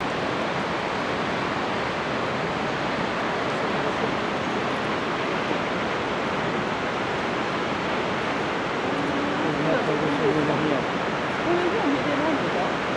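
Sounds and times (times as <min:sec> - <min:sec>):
waterfall rushing: 0:00.0 - 0:12.9.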